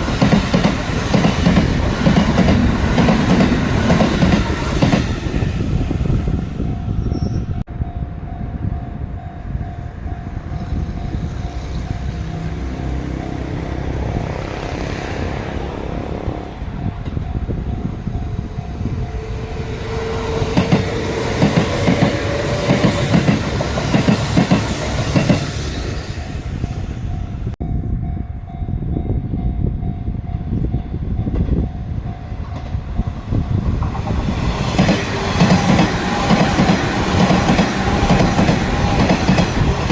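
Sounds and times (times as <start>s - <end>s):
train wheels clattering over rail joints: 20.2s - 25.5s, 33.7s - 39.9s.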